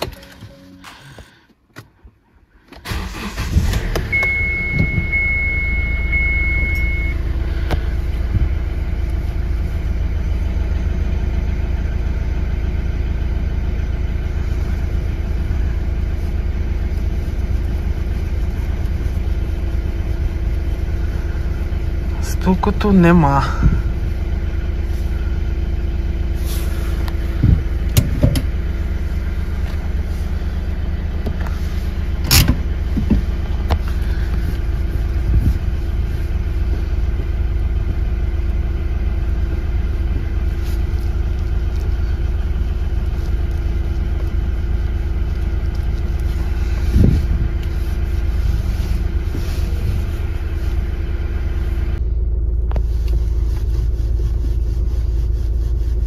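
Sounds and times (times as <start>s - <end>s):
car engine and road rumble: 0.0s - 56.0s
short thumps: 27.1s - 28.6s.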